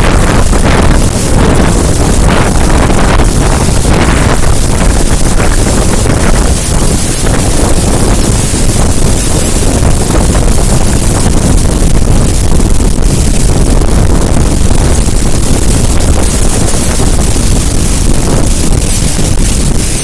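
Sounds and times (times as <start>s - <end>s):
waterfall roaring: 0.0s - 20.0s
wind buffeting microphone: 0.0s - 20.0s.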